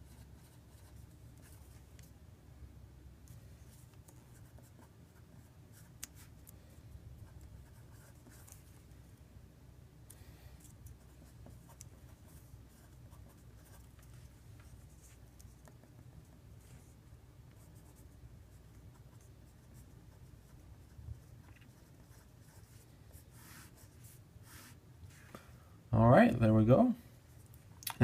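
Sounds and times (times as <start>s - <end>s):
low steady hum: 0.0s - 28.0s
pen scratching on paper: 7.2s - 8.7s, 10.6s - 17.0s, 17.6s - 24.8s.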